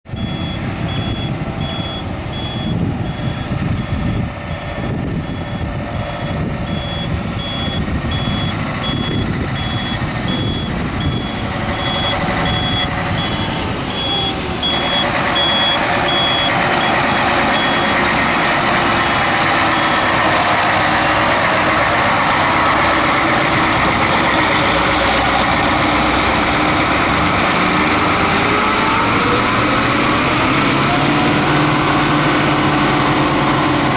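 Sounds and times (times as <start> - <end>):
reversing alarm beeping: 0.1 - 18.1, 19.6 - 20.4
truck engine running: 0.1 - 33.9.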